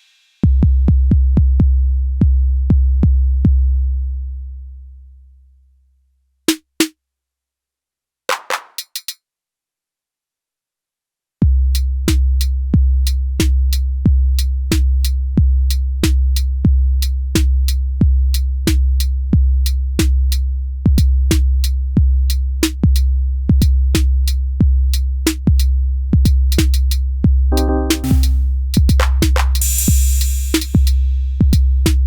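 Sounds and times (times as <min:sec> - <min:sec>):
deep kick drum: 0:00.4 - 0:03.6, 0:20.8 - 0:21.4, 0:22.8 - 0:29.5, 0:30.8 - 0:32.0.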